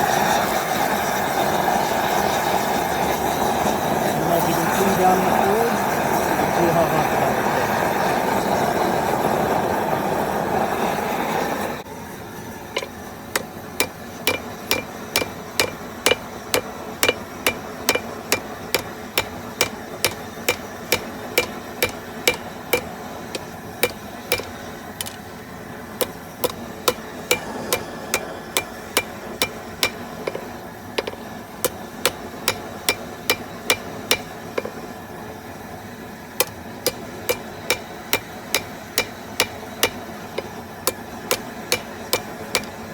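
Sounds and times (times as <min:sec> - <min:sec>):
gas forge burner roaring: 0:00.1 - 0:42.9
hammer striking hot steel: 0:12.8 - 0:25.2, 0:26.0 - 0:34.9, 0:36.4 - 0:42.9.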